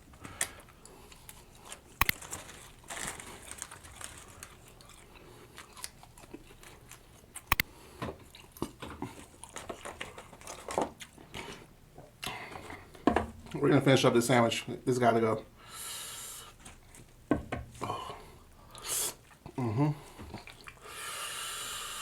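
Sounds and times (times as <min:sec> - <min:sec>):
chewing and biting food: 0:00.4 - 0:12.4, 0:20.1 - 0:20.9.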